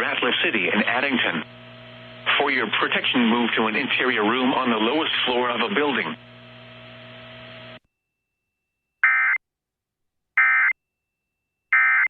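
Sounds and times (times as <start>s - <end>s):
faint radio hum: 0.0s - 7.8s.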